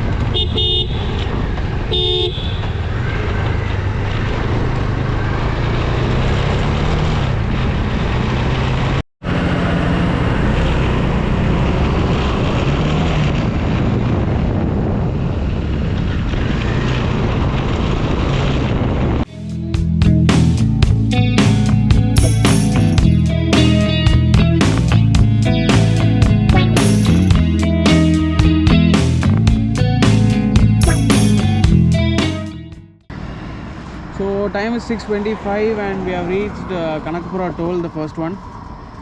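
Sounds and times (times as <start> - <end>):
horn toots: 0.3 - 1.2, 30.4 - 32.8
wind noise: 10.3 - 19.3
motorcycle engine running: 19.3 - 32.9.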